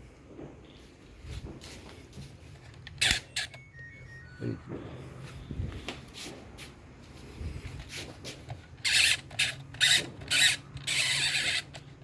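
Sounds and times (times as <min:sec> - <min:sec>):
plastic timer dial scraping: 0:02.6 - 0:03.6, 0:07.8 - 0:12.0.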